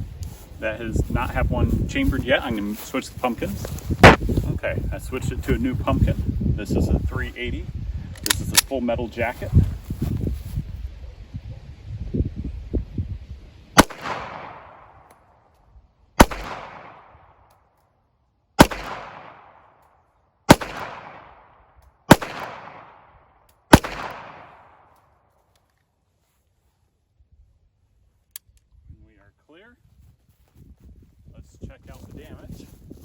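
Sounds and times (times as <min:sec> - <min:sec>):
pistol shots with echo: 0:13.8 - 0:15.0, 0:16.2 - 0:17.1, 0:18.6 - 0:19.6, 0:20.5 - 0:21.5, 0:22.1 - 0:23.1, 0:23.7 - 0:24.8.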